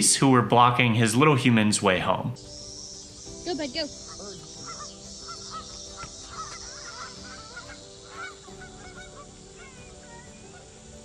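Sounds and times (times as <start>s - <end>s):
geese honking: 0.0s - 11.0s.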